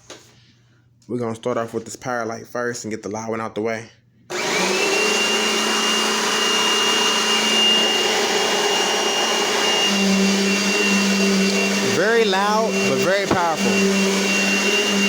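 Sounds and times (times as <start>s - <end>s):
vacuum cleaner running: 4.3s - 15.0s.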